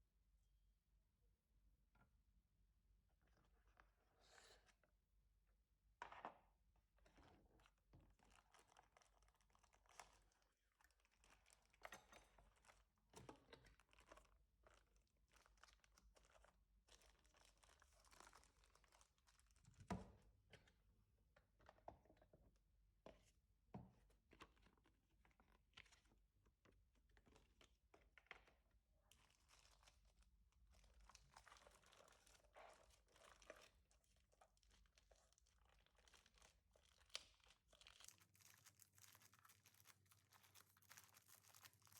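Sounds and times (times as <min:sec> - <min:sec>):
packaging rustling and crinkling: 0:35.4 - 0:41.9.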